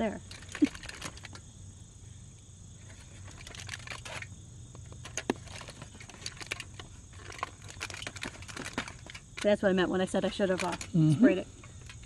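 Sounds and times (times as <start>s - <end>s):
foil pack crinkling: 0.3s - 1.4s, 2.8s - 11.0s.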